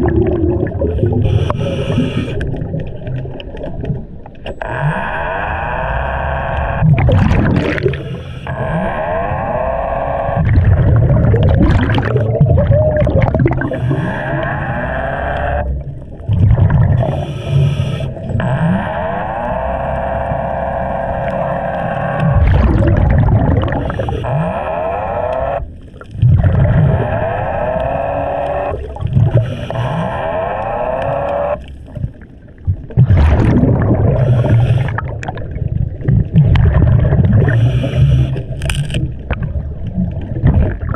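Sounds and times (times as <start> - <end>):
churning water rumble: 0.0 - 40.9
underwater motor whining: 0.0 - 40.9.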